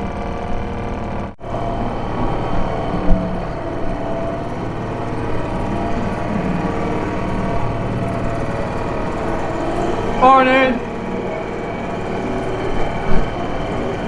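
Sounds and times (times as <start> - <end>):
two-stroke outboard motor running: 0.0 - 14.0.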